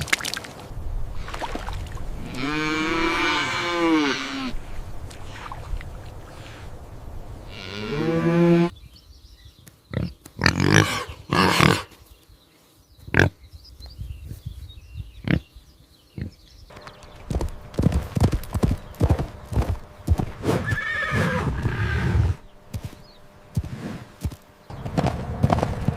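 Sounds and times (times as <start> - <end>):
cow mooing: 2.2 - 4.6, 7.5 - 8.7
hoof knocks: 16.7 - 20.7, 22.6 - 25.9
hoof clops: 16.7 - 20.9, 22.6 - 25.9
horse snorting blasts: 20.3 - 22.4.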